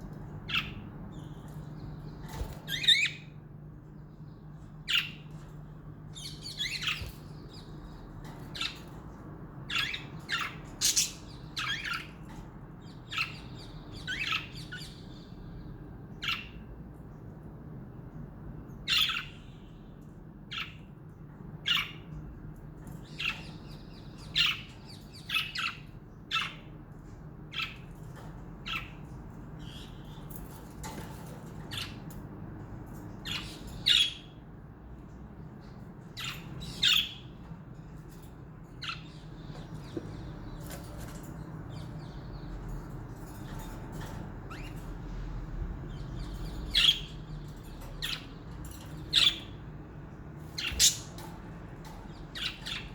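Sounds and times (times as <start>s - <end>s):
budgerigars squawking and chirping: 0.5s - 1.6s, 9.7s - 15.3s, 35.6s - 37.3s, 45.9s - 49.6s, 50.5s - 52.9s.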